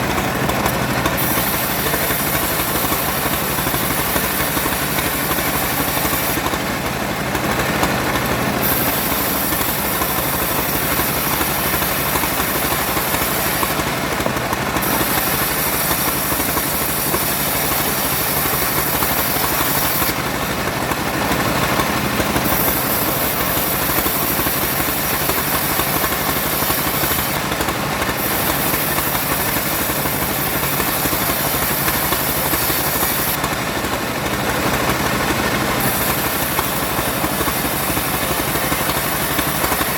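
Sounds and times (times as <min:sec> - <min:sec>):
saw hissing through wood: 0:01.0 - 0:06.9, 0:08.2 - 0:20.3, 0:22.4 - 0:33.9, 0:35.8 - 0:39.9.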